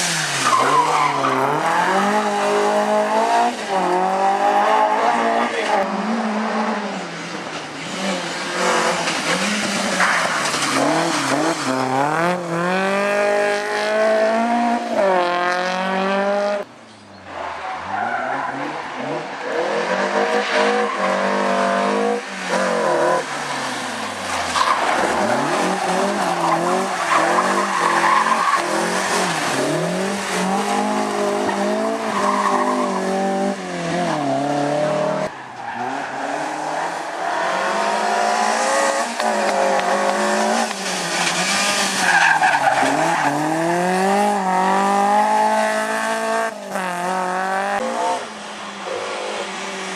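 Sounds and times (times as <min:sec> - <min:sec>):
rally car engine revving hard: 0:07.8 - 0:16.6, 0:18.5 - 0:48.3.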